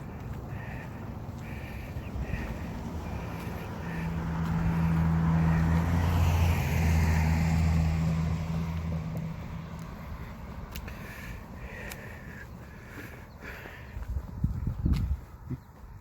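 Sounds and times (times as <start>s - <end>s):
vehicle driving past: 1.0s - 11.6s.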